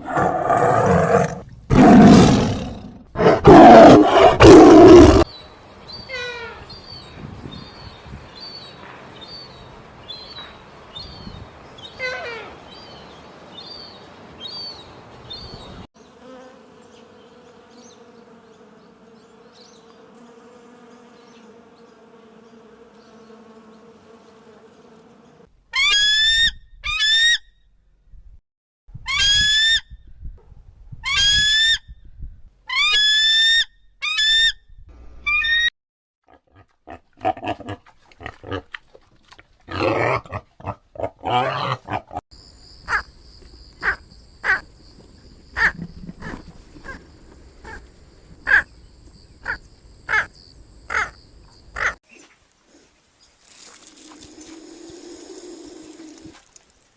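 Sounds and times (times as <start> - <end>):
loud rising animal calls: 0.0 - 5.3
rough animal grunting calls: 39.7 - 42.2.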